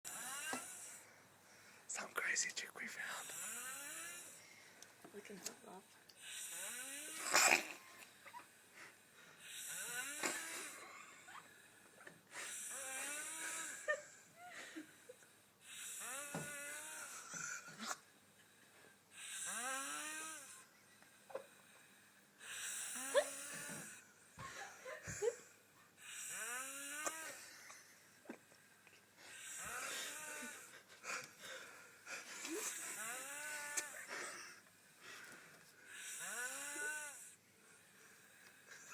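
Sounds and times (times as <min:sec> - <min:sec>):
woman snoring with whistle: 0:00.1 - 0:01.0, 0:03.2 - 0:04.4, 0:06.2 - 0:07.9, 0:09.4 - 0:11.5, 0:12.4 - 0:14.0, 0:15.7 - 0:17.3, 0:19.2 - 0:20.8, 0:22.4 - 0:24.0, 0:26.0 - 0:27.6, 0:32.6 - 0:34.1, 0:35.9 - 0:37.4.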